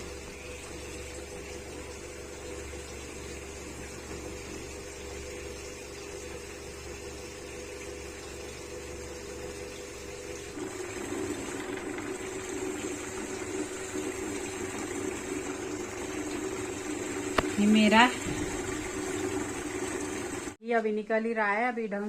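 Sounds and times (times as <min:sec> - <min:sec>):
electric mixer motor: 0:10.3 - 0:20.6.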